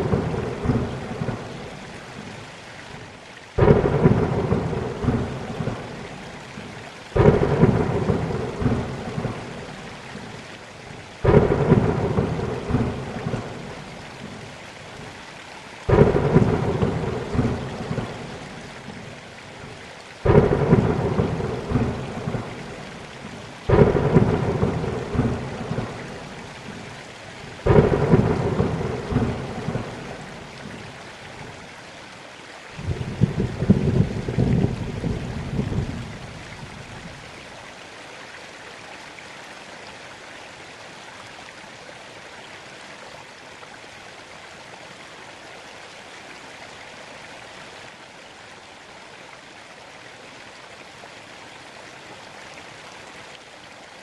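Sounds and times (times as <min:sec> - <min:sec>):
thunder cracking and rumbling: 0:00.0 - 0:01.5, 0:03.6 - 0:06.0, 0:07.2 - 0:09.7, 0:11.2 - 0:13.7, 0:15.9 - 0:18.3, 0:20.2 - 0:23.0, 0:23.7 - 0:26.4, 0:27.6 - 0:30.4, 0:32.8 - 0:37.3
steady rain: 0:00.0 - 0:54.0.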